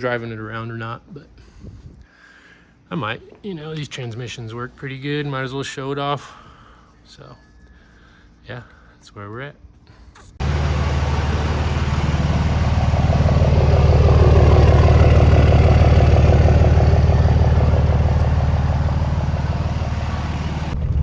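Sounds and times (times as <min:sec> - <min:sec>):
diesel engine running: 0:10.4 - 0:20.8.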